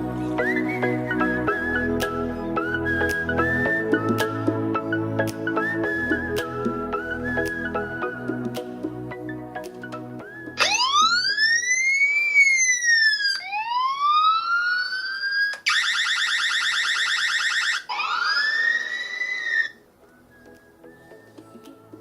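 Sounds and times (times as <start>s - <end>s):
electronic alarm siren: 10.6s - 19.8s.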